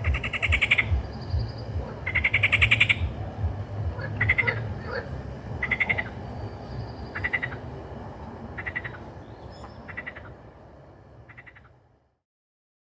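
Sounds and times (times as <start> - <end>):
frog pulsed call: 0.0 - 7.7, 8.6 - 10.4, 11.2 - 11.8
chorus of frogs croaking: 0.0 - 11.9.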